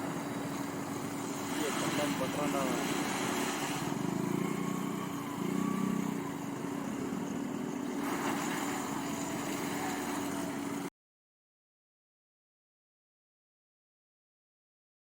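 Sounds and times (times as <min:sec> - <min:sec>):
car engine running at low revs: 0:00.0 - 0:10.9.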